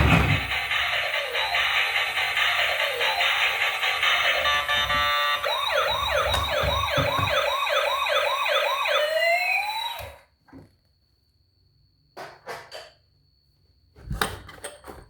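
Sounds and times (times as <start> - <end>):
music: 0.0 - 6.7
toy electronic siren: 0.3 - 10.3.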